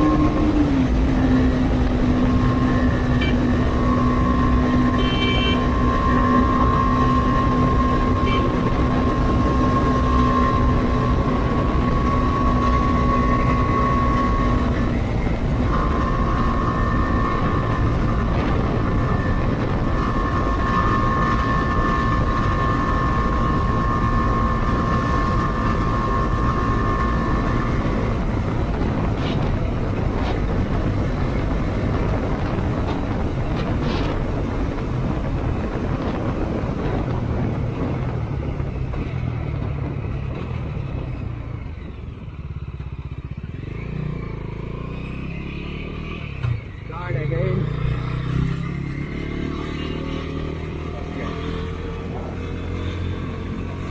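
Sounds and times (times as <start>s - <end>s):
motorcycle engine cruising: 0.0s - 53.9s
wind and road rush: 0.0s - 53.9s.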